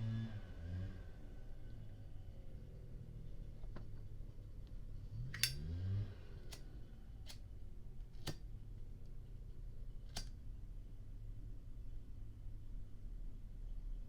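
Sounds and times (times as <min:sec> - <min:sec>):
lighter lid clicking: 0:05.3 - 0:05.6, 0:10.1 - 0:10.3.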